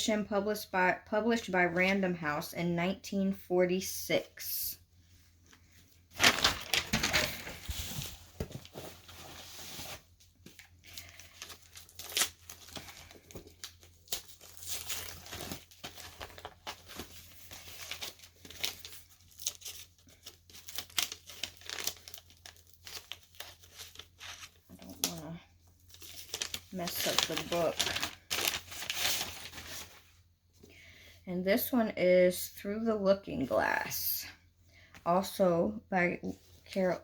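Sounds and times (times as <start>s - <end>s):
packing material crinkling and tearing: 6.1s - 30.0s.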